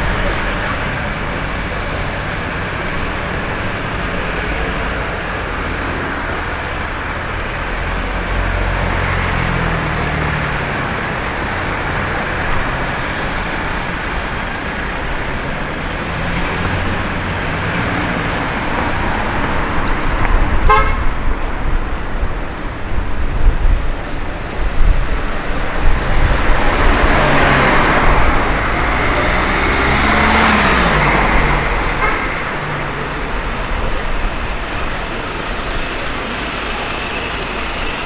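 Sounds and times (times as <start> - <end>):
cars passing: 0.0 - 38.0
wind buffeting microphone: 0.0 - 38.0
vehicle horn toot: 20.6 - 21.2, 31.8 - 32.6.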